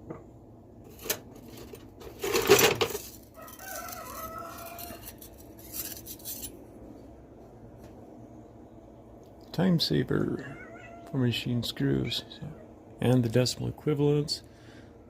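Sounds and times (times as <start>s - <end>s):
steel tools clinking: 2.2s - 6.6s.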